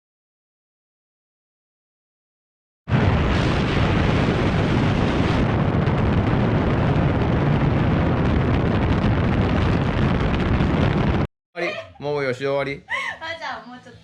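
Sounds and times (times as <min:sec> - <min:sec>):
heavy low rumble: 0:02.9 - 0:11.3.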